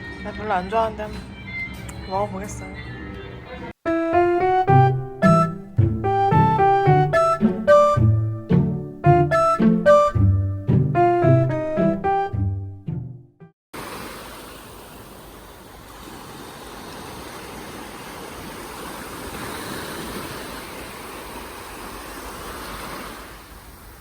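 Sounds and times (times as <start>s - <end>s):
wind: 13.7s - 24.0s
sea surf washing onto beach: 13.8s - 24.0s.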